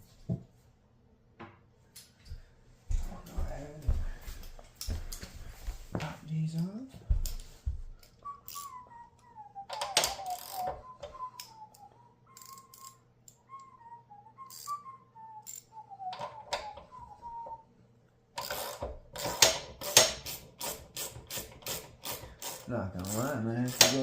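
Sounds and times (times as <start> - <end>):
person whistling a tune: 8.1 - 17.7, 23.0 - 24.0
socket ratchet clicking: 9.7 - 10.8, 12.4 - 13.4, 14.5 - 14.8, 15.4 - 16.3, 18.4 - 24.0.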